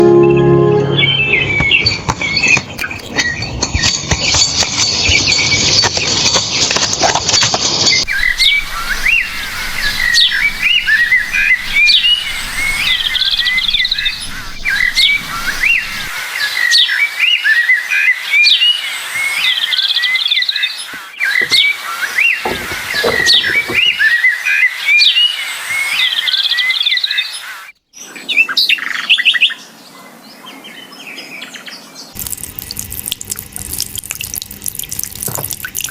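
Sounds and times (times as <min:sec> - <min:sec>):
small birds chirping: 0:07.9 - 0:16.2.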